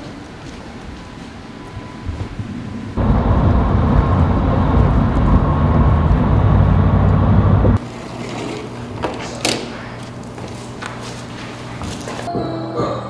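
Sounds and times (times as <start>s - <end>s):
loud low rumbling: 3.0s - 7.8s.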